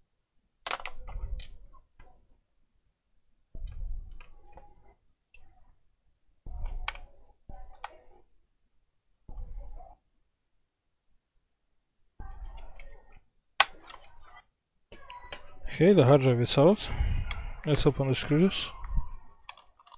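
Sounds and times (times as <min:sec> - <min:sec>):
plastic parts clicking and knocking: 0:00.6 - 0:02.3, 0:03.5 - 0:05.6, 0:06.4 - 0:08.3, 0:12.2 - 0:14.4, 0:18.7 - 0:19.9.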